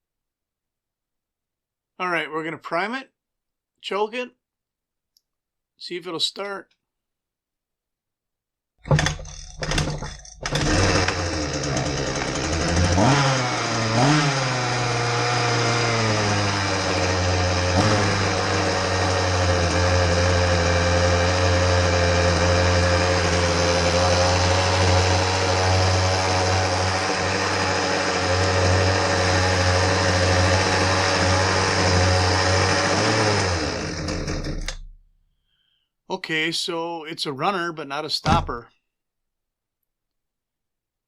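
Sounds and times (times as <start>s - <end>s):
recoil starter pulls: 8.8s - 35.0s
small two-stroke engine running: 8.9s - 34.8s.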